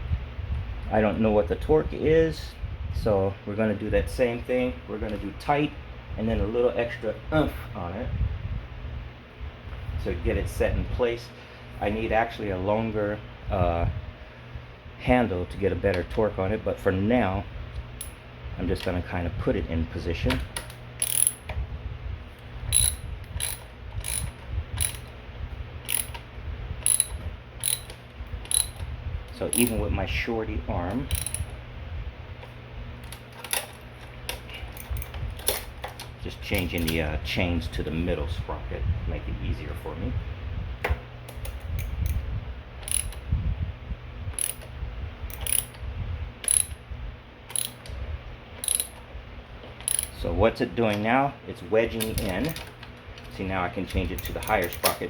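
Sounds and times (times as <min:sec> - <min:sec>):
ratchet clicking: 0:20.6 - 0:21.5, 0:22.7 - 0:25.1, 0:25.8 - 0:26.2, 0:26.8 - 0:29.8, 0:31.1 - 0:31.6, 0:33.0 - 0:36.0, 0:42.8 - 0:43.2, 0:44.4 - 0:44.7, 0:45.3 - 0:45.8, 0:46.4 - 0:46.8, 0:47.5 - 0:47.9, 0:48.6 - 0:49.0, 0:49.8 - 0:50.2, 0:54.1 - 0:55.0
bicycle chain running over sprockets: 0:21.0 - 0:21.4, 0:22.7 - 0:25.1, 0:25.9 - 0:26.2, 0:26.8 - 0:27.9, 0:28.5 - 0:28.8, 0:29.4 - 0:29.8, 0:31.1 - 0:31.5, 0:42.8 - 0:43.1, 0:44.4 - 0:44.6, 0:45.3 - 0:45.7, 0:46.5 - 0:46.7, 0:47.5 - 0:47.8, 0:48.6 - 0:48.9, 0:49.8 - 0:50.1.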